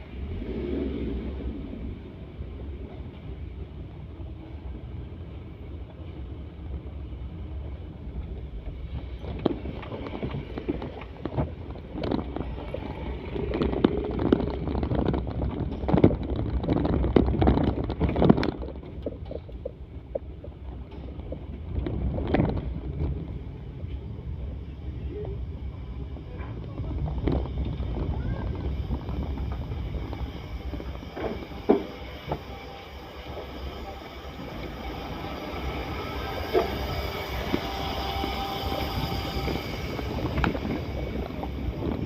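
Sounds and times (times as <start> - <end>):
wind on microphone: 0.0 - 5.6, 6.3 - 42.0
vehicle rumble: 0.0 - 42.0.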